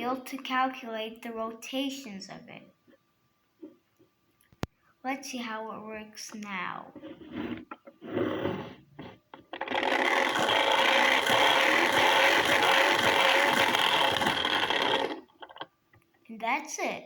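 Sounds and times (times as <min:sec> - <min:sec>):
clicks and rustles of handling: 0:06.4 - 0:09.8
plastic gears whirring: 0:07.1 - 0:15.7.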